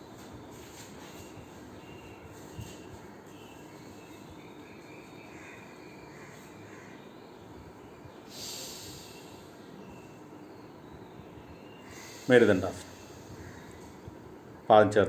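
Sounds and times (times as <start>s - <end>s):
faint room noise: 0.0s - 15.0s
long breath: 8.3s - 9.7s, 11.8s - 13.8s.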